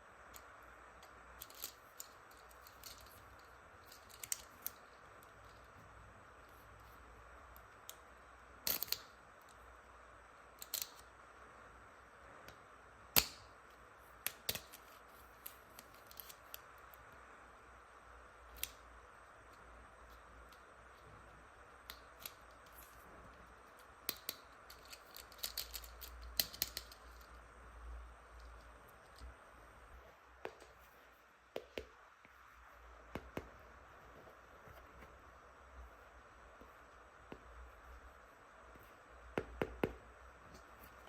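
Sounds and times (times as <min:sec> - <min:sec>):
plastic toy pieces clicking: 0:01.4 - 0:04.8, 0:10.6 - 0:11.1, 0:24.0 - 0:27.3.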